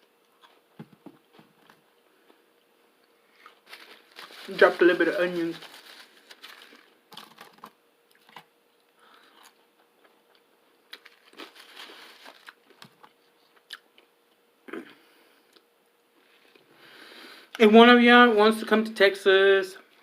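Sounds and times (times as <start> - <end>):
chewing crunching: 9.1 - 14.1.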